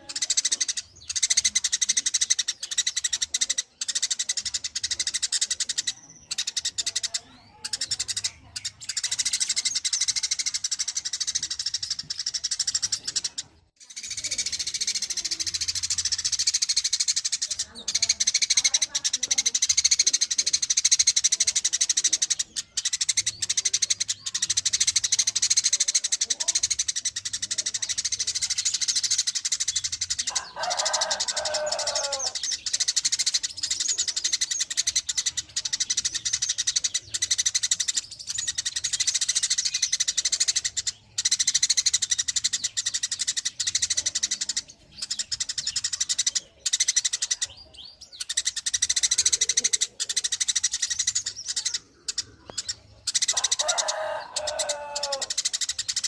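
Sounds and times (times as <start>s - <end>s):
high-pitched bird chirping: 0.0s - 56.0s
lower falling bird calls: 30.4s - 34.7s.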